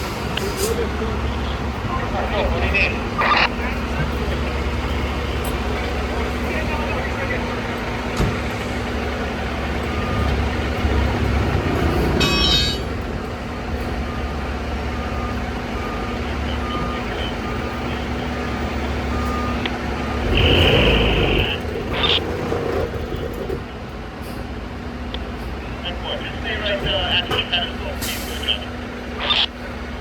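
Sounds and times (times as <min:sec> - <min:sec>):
trucks idling: 0:00.0 - 0:30.0
reversing alarm beeping: 0:09.0 - 0:22.4.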